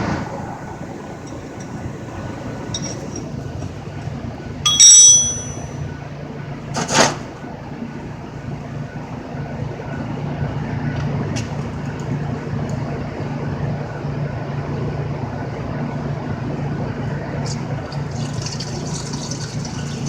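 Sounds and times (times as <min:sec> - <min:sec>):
metallic clink: 0:02.7 - 0:03.3, 0:04.7 - 0:05.8.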